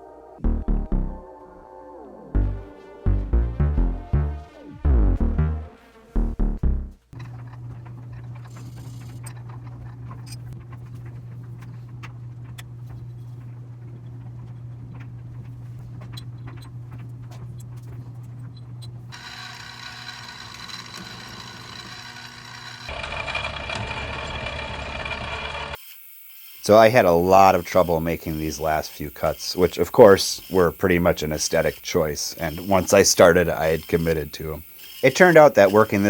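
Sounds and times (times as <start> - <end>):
high machine whine: 19.1 - 36.0
milling machine motor hum: 19.1 - 36.0.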